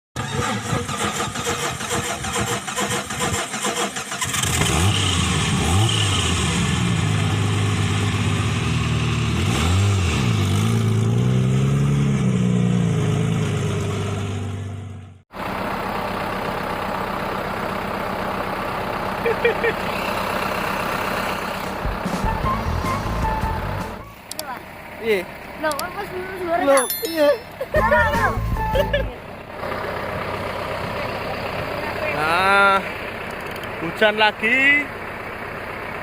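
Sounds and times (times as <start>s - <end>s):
engine rattling: 0.2s - 8.8s, 15.3s - 26.8s, 27.5s - 36.0s
engine revving: 0.2s - 15.1s
engine idling: 15.3s - 26.8s, 27.5s - 36.0s.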